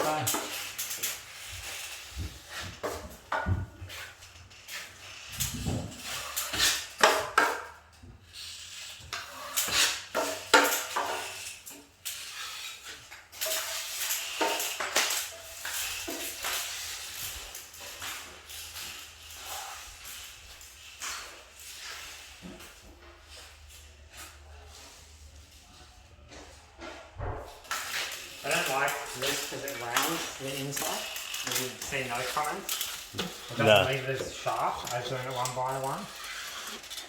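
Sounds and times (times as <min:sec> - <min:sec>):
metal tools scraping and clinking: 0:27.7 - 0:37.0.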